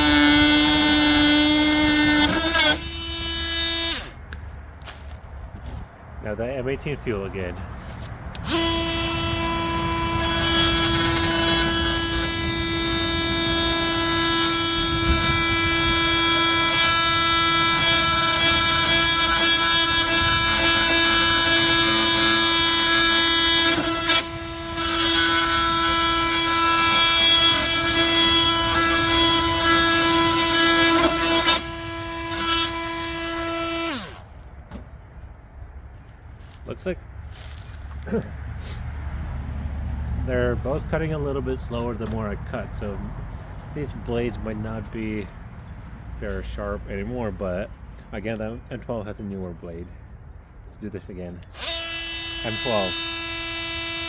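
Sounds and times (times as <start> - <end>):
oscillating multi-tool cutting wood: 0.0 - 4.3, 8.4 - 34.4, 51.4 - 54.0.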